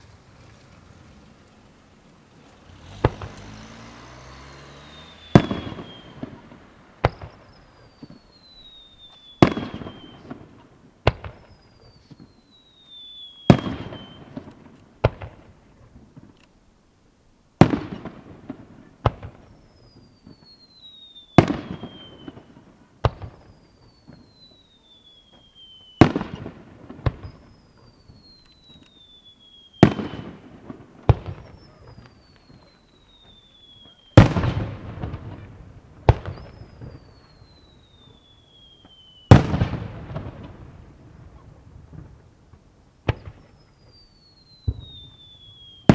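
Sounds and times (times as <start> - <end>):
firework bangs: 0.0 - 16.4, 17.6 - 45.9
firework whistle falling in pitch: 4.5 - 10.4, 19.6 - 22.5, 23.4 - 26.4, 27.1 - 30.4, 31.3 - 34.6, 36.2 - 39.7, 43.4 - 45.9.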